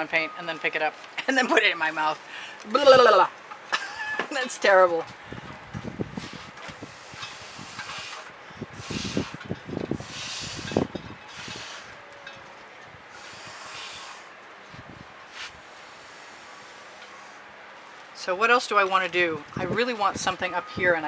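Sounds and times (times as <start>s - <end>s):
gusty wind buffeting microphone: 5.0s - 12.0s, 14.7s - 15.9s, 19.1s - 21.0s.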